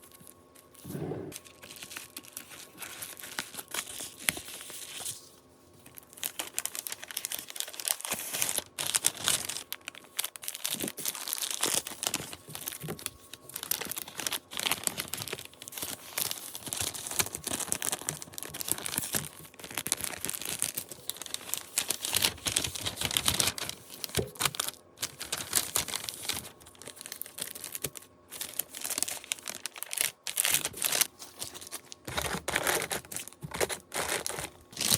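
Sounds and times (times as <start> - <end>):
packing materials crinkling: 0.0 - 34.9
scratchy tearing: 32.1 - 34.9.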